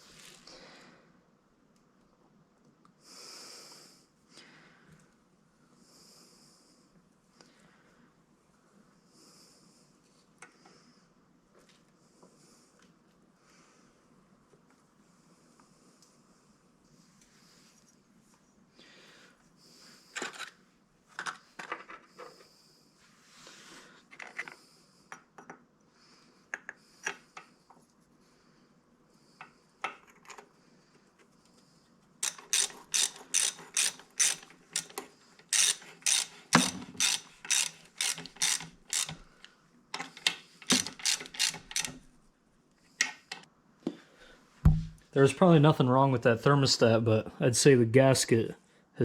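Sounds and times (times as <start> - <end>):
ratchet wrench clicking: 32.2 - 39.3, 40.0 - 42.1
tools and parts clinking: 32.2 - 39.3, 40.0 - 42.1.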